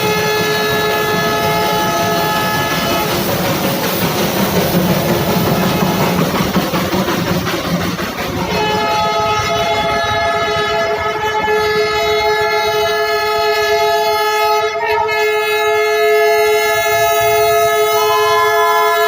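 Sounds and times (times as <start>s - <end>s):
locomotive horn blast: 0.0s - 3.6s, 8.4s - 19.0s.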